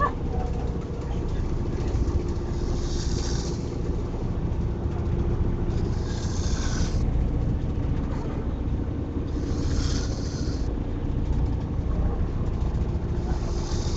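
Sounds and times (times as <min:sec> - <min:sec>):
vehicle low rumble: 0:00.0 - 0:13.9
hissing breaths: 0:01.9 - 0:04.2, 0:05.6 - 0:07.1, 0:09.3 - 0:10.7, 0:13.1 - 0:13.9
person snoring: 0:09.4 - 0:10.6.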